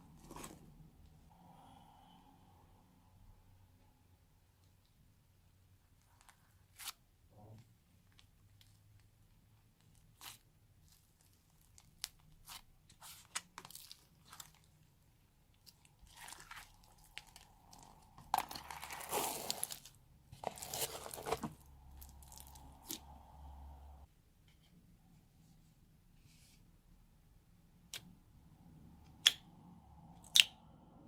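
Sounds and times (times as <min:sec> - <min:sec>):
crunchy slime squished by hand: 0:15.6 - 0:23.1.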